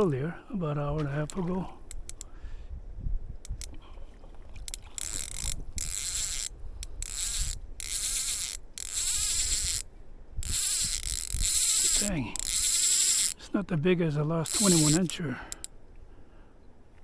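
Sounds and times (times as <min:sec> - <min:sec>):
wind: 0:00.0 - 0:17.0
fly reel ratchet clicking: 0:01.3 - 0:02.3, 0:03.4 - 0:03.7, 0:04.6 - 0:13.4, 0:14.5 - 0:15.8.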